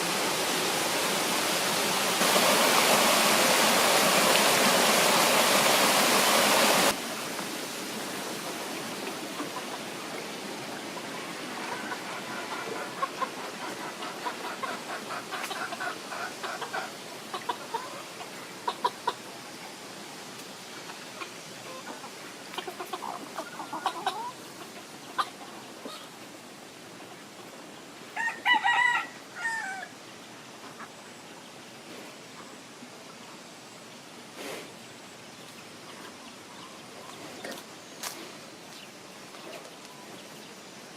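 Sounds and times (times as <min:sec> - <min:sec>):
chickens clucking: 0:08.8 - 0:19.5, 0:20.8 - 0:26.2, 0:30.5 - 0:31.2, 0:35.4 - 0:40.6.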